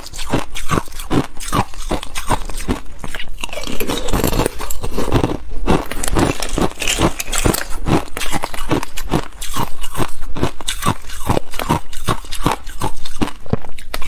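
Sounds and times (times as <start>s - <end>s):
ice being chewed: 0.0s - 14.0s.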